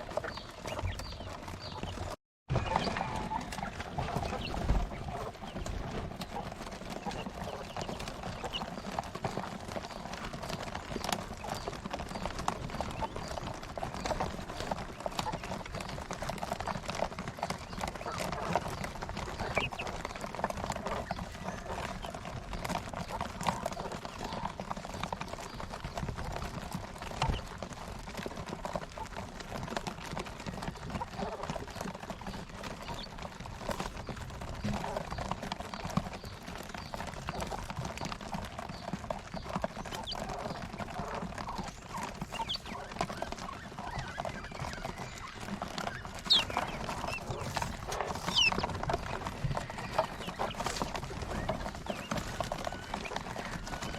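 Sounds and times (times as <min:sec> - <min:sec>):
quail pecking and scratching: 0:00.0 - 0:53.9
quail soft calls: 0:41.5 - 0:53.9.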